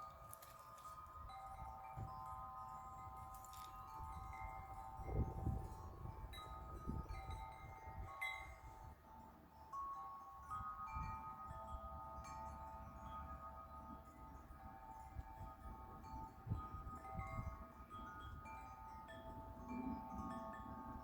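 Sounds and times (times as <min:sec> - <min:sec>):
wind rumble: 0:00.0 - 0:09.0
metal wind chimes ringing: 0:00.0 - 0:21.0.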